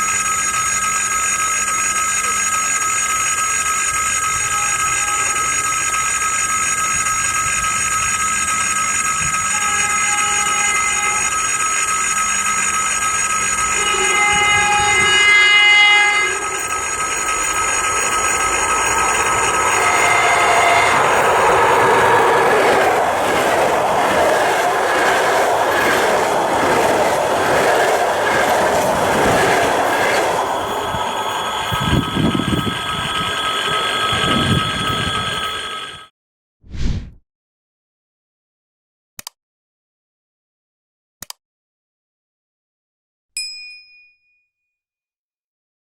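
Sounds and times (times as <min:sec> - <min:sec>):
electric train approaching: 0:00.0 - 0:36.1
track and wheel noise: 0:00.0 - 0:36.1
train horn blast: 0:03.9 - 0:06.3, 0:09.2 - 0:36.0
high whine: 0:03.9 - 0:36.1.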